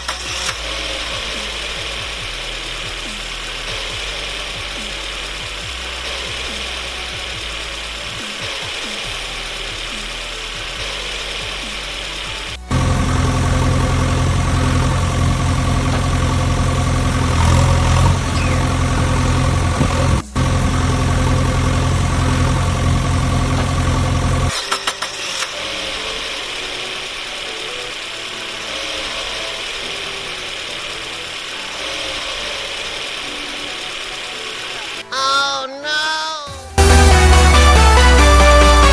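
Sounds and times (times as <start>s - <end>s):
engine idling: 0.0s - 24.6s, 36.8s - 38.9s.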